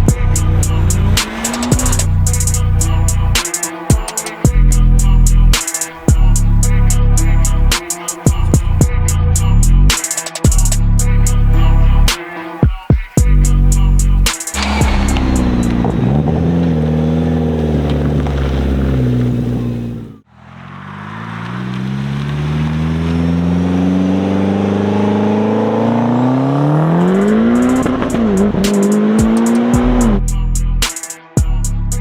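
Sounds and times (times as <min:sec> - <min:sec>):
turbocharged car engine revving: 0:00.0 - 0:03.7, 0:13.4 - 0:30.3.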